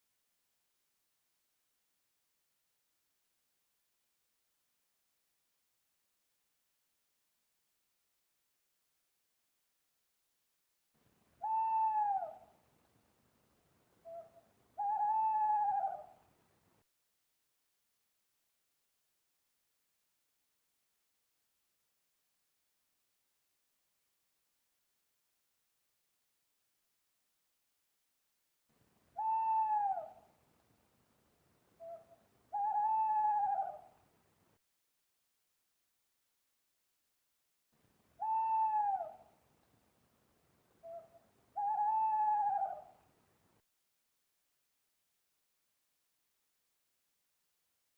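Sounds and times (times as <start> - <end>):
owl hooting: 11.4 - 12.6, 14.0 - 16.2, 29.2 - 30.3, 31.8 - 34.0, 38.2 - 39.4, 40.8 - 43.1.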